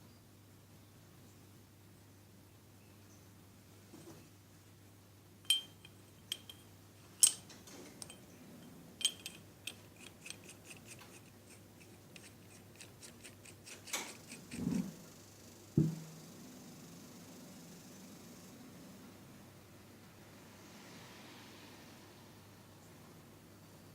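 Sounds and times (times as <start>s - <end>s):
small metal parts clinking: 5.5s - 14.6s
dull knocks: 15.8s - 16.1s.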